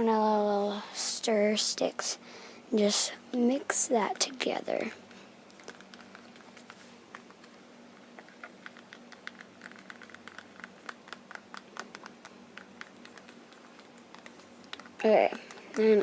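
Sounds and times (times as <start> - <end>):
stir stick clicking and scraping: 5.5 - 16.0.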